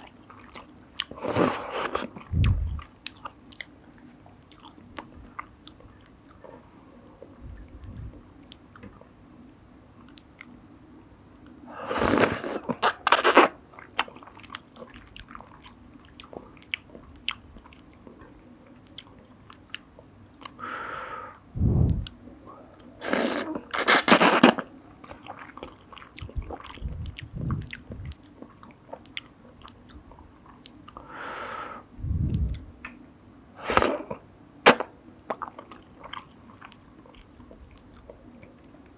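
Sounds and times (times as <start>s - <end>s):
slurping: 1.1s - 2.8s, 11.8s - 13.5s, 23.0s - 24.7s, 33.6s - 34.8s
chewing noodles: 23.0s - 31.0s.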